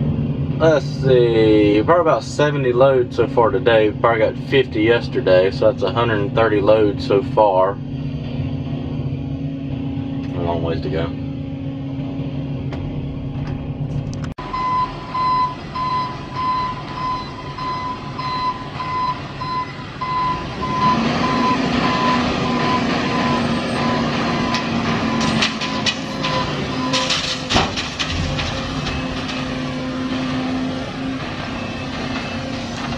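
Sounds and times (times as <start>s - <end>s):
diesel engine running: 0.0s - 32.9s
backup alarm beeping: 14.4s - 32.9s.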